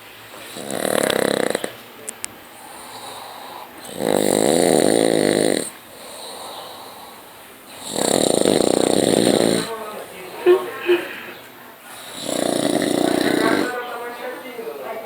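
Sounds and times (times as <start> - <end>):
man snoring: 0.4 - 1.8, 2.6 - 9.8, 11.9 - 13.9.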